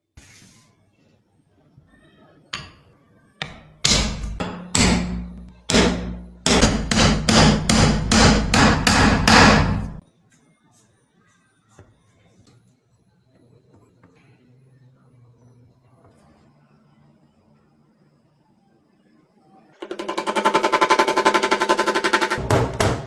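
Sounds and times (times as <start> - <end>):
hammer blows with ringing tail: 3.4 - 10.0.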